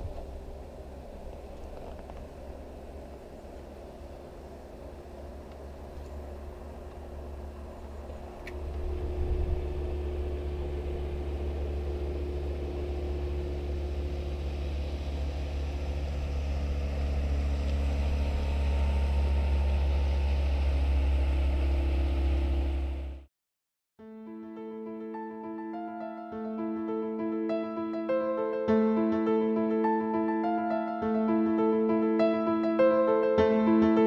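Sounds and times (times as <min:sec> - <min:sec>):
engine humming: 0:00.0 - 0:23.3.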